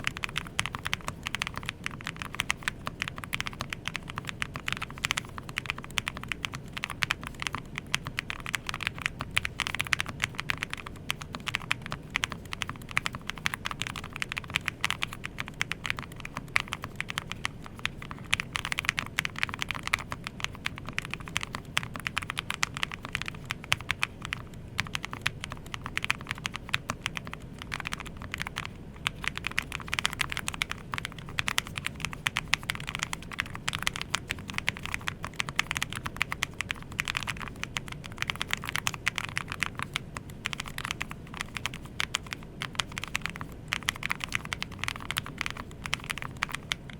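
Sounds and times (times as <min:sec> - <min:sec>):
fast typing on mechanical keyboard: 0:00.0 - 0:46.9.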